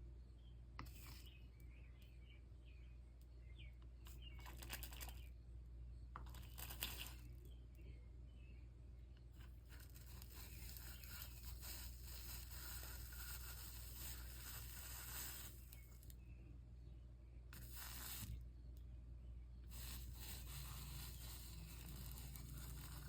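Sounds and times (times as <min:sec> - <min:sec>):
low steady hum: 0:00.0 - 0:23.0
soldering iron crackling and sizzling: 0:09.6 - 0:16.2, 0:17.5 - 0:18.4, 0:19.7 - 0:23.0.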